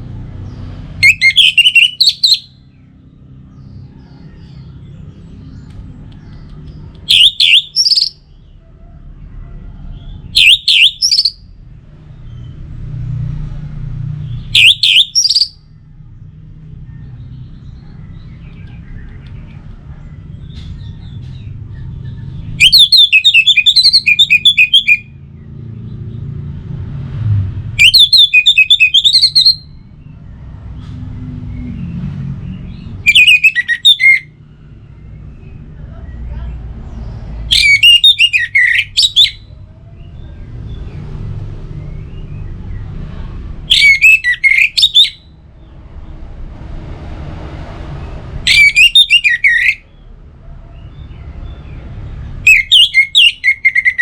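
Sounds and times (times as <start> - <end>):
thrush singing: 0.9 - 2.5, 6.8 - 8.2, 10.3 - 11.4, 14.5 - 15.6, 22.6 - 25.1, 27.8 - 29.7, 32.9 - 34.3, 37.5 - 40.2, 43.6 - 45.3, 48.4 - 49.8.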